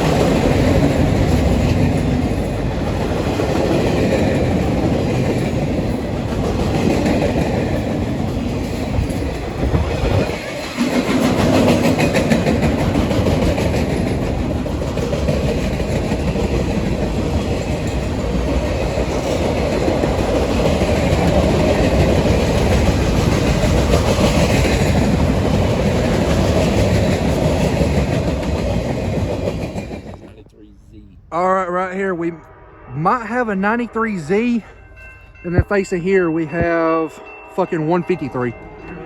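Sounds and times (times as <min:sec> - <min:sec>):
wheels clacking over rail joints: 0:00.0 - 0:30.3
train wheels rumbling on rails: 0:00.0 - 0:32.6.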